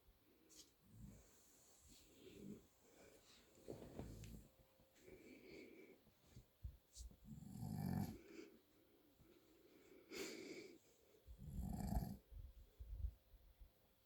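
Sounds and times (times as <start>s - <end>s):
man snoring: 7.5s - 8.2s, 11.5s - 12.2s.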